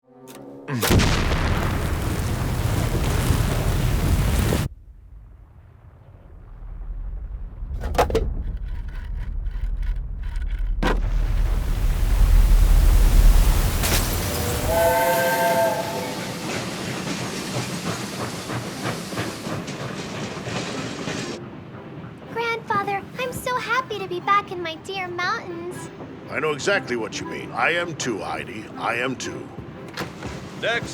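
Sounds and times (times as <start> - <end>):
cartoon train rumble: 12.7 - 21.4
train whistle blast: 13.8 - 16.9.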